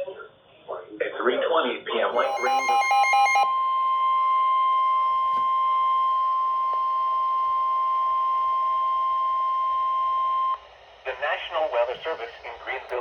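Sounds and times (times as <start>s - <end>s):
steady high alarm beep: 2.2s - 10.6s.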